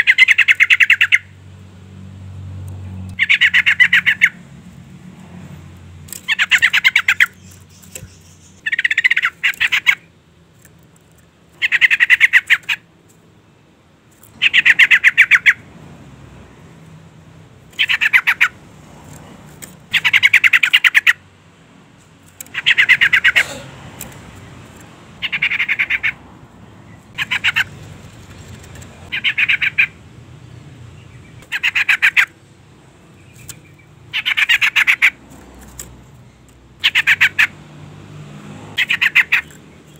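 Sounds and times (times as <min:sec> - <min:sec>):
bird chattering calls: 0:00.0 - 0:01.4, 0:03.1 - 0:04.4, 0:06.1 - 0:10.2, 0:11.5 - 0:12.9, 0:14.2 - 0:15.7, 0:17.7 - 0:18.6, 0:19.8 - 0:21.2, 0:22.4 - 0:26.2, 0:26.8 - 0:30.0, 0:31.0 - 0:37.6, 0:38.8 - 0:39.9.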